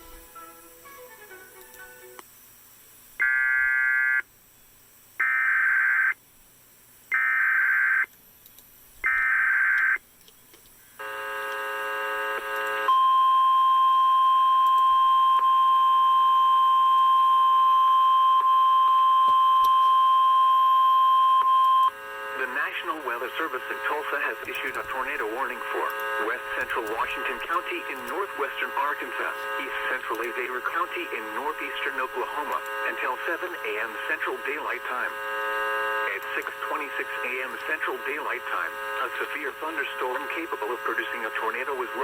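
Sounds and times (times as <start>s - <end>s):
emergency alert data bursts: 3.2s - 4.2s, 5.2s - 6.2s, 7.1s - 8.1s, 9.0s - 10.0s, 11.0s - 42.0s
weather radio alarm tone: 3.2s - 4.2s, 11.0s - 42.0s.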